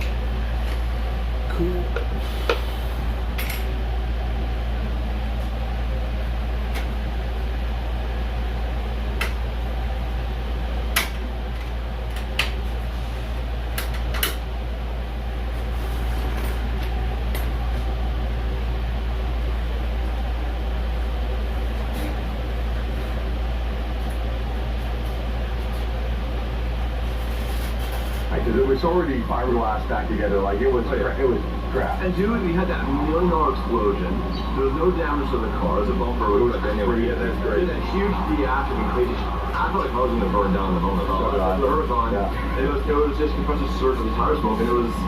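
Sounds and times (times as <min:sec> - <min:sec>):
steady low hum: 0:00.0 - 0:45.0.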